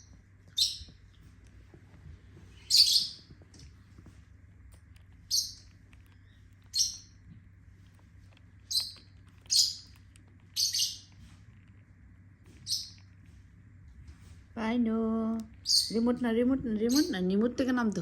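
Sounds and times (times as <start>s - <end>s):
bird high-pitched chirps: 0.0s - 1.0s, 2.5s - 3.3s, 5.0s - 7.2s, 8.3s - 11.2s, 12.6s - 13.2s, 15.5s - 16.2s, 16.8s - 17.3s.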